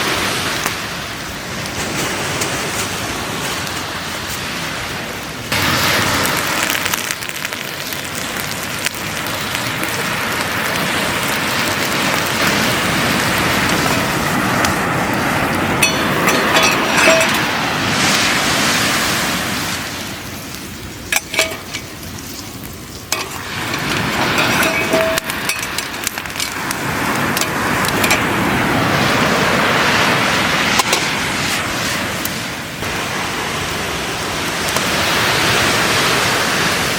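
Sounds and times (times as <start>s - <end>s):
food sizzling in a pan: 5.5s - 28.3s.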